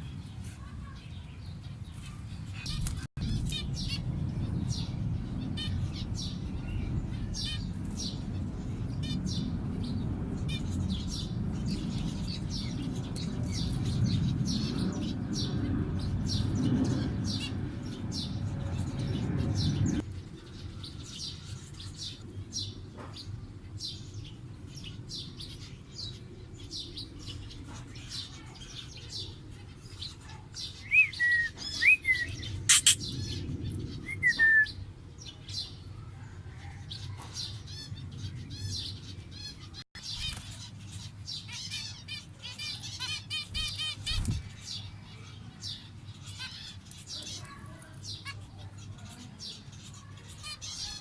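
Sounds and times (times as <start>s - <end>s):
whistled bird notes: 30.8s - 33.4s, 34.0s - 34.8s.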